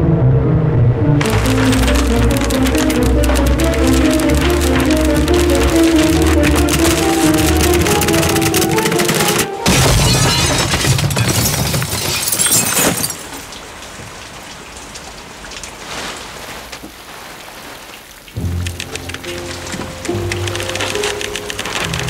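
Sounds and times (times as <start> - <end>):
music: 0.0 - 10.2, 18.4 - 22.0
rain: 1.2 - 9.2, 10.0 - 22.0.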